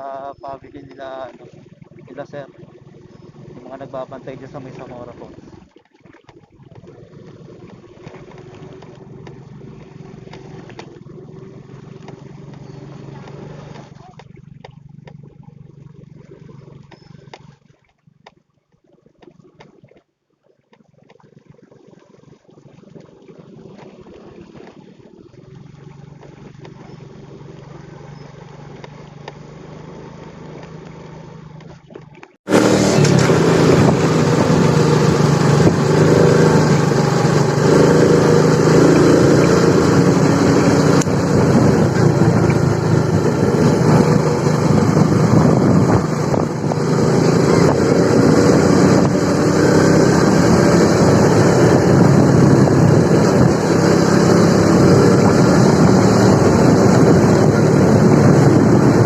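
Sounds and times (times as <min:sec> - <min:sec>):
motorcycle engine running: 0:00.0 - 0:05.6, 0:06.7 - 0:18.3, 0:25.2 - 0:31.9, 0:32.5 - 0:59.0
wind rushing over microphone: 0:32.5 - 0:59.0.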